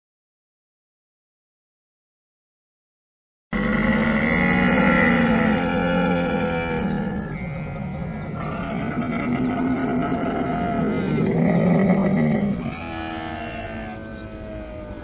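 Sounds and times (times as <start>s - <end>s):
camel bellowing: 3.6s - 15.0s.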